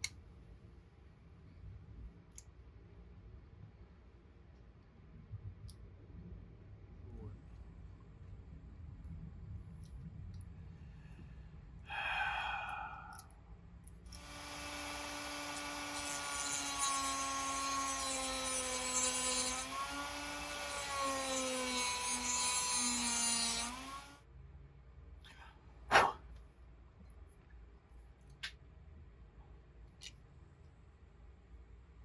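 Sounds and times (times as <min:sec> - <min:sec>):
power tool whining: 0:14.1 - 0:24.2.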